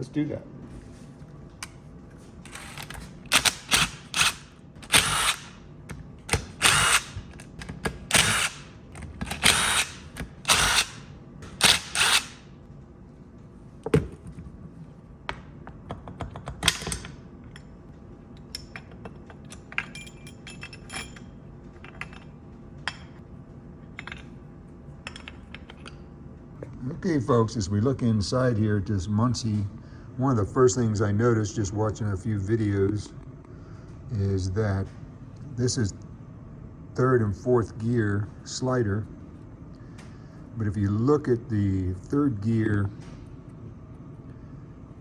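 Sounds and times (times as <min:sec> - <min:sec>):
power drill running in bursts: 0:02.5 - 0:05.5, 0:06.3 - 0:07.2, 0:08.1 - 0:08.6, 0:09.3 - 0:11.0, 0:11.6 - 0:12.4.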